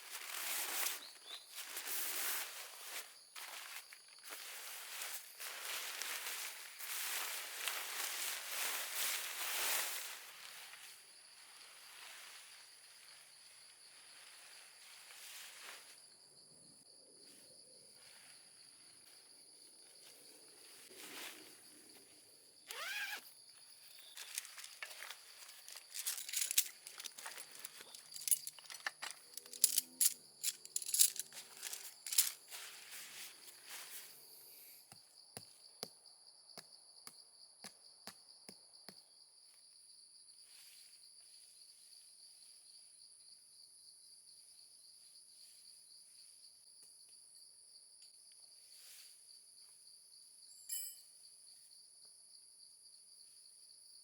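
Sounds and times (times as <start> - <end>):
gear rustling and crinkling: 0.0 - 10.8, 23.8 - 34.2
insects singing: 22.7 - 32.4
clicks and crackles: 24.2 - 32.4.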